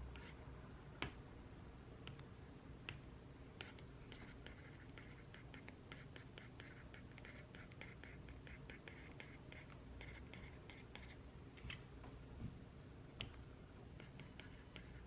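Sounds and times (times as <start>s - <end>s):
pen scratching on paper: 3.6s - 11.2s, 14.0s - 15.0s.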